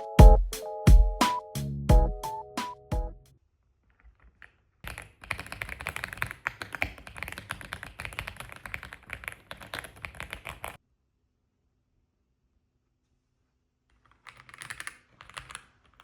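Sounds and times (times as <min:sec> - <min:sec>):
fast typing on keyboard: 0:04.8 - 0:10.8, 0:14.1 - 0:16.0.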